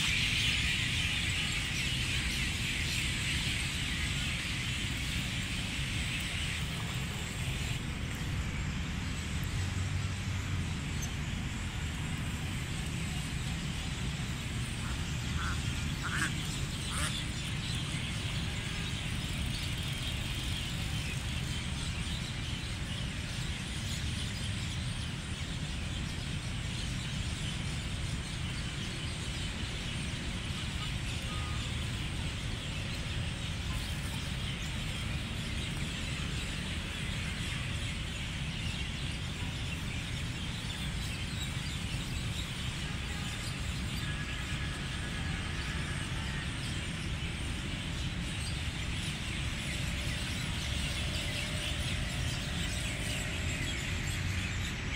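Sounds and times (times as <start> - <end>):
low rumble with hiss: 0.0 - 54.9
faint bird calls: 14.7 - 17.3.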